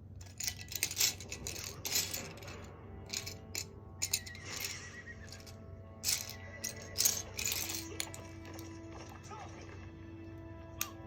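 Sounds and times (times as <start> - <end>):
quiet music of sustained tones: 0.0 - 11.0
light clicks and clinks: 0.2 - 8.8.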